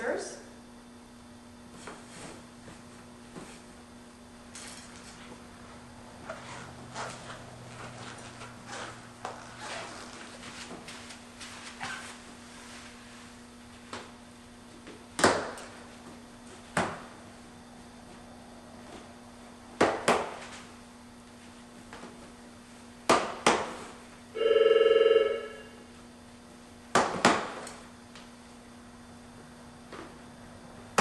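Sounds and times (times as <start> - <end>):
faint steady hum: 0.0 - 31.0
electronic ring: 24.4 - 25.9.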